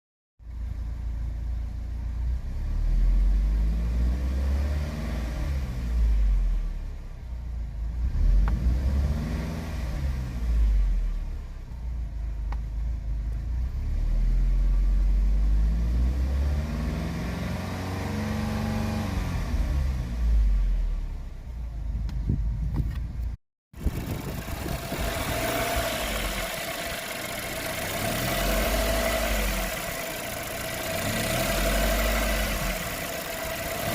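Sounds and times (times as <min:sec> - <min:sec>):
car engine revving: 0:07.9 - 0:11.2, 0:13.6 - 0:21.1, 0:23.8 - 0:33.9.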